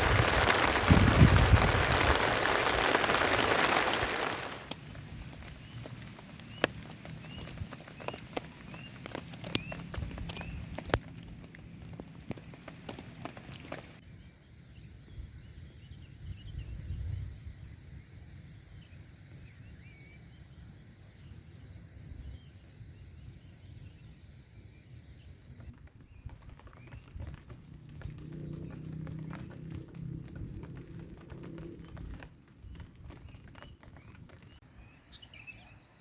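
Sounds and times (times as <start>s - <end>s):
raindrops tapping and dripping: 0.0s - 14.0s, 25.6s - 34.6s
birds chirping: 0.0s - 16.7s, 22.0s - 36.0s.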